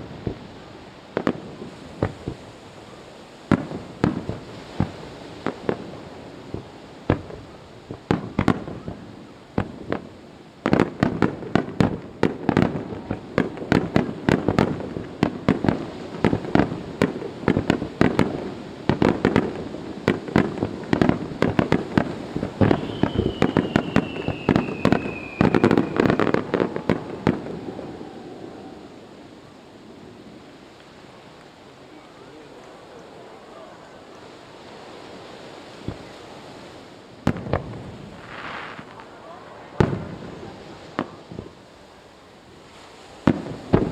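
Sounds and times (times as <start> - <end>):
fireworks bursting: 0.0 - 43.9
descending firework whistle: 22.3 - 41.6.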